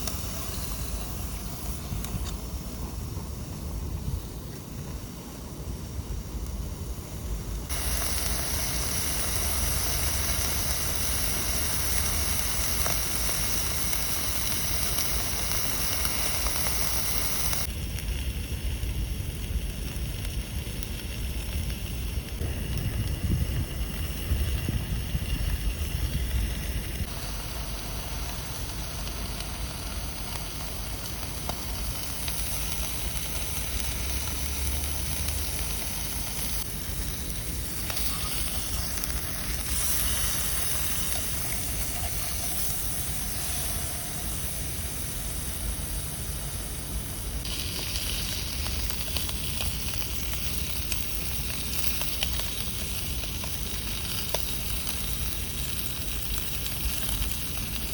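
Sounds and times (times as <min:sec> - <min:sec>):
food frying sizzle: 0:00.0 - 0:02.6, 0:07.6 - 0:57.9
wind rumble on microphone: 0:00.0 - 0:08.7, 0:17.5 - 0:27.3.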